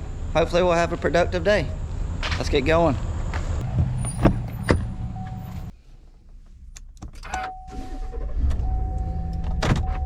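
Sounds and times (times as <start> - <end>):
dashboard warning tone: 3.6 - 5.7
truck door and keys clicking: 6.8 - 7.6.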